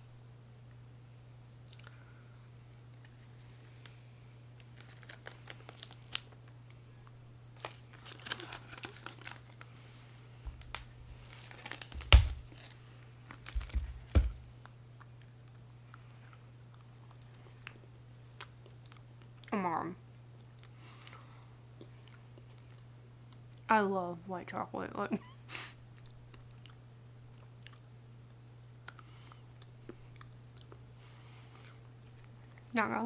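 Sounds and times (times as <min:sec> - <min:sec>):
wrapper crinkling and tearing: 0:04.6 - 0:06.6, 0:07.6 - 0:09.7, 0:10.5 - 0:14.5.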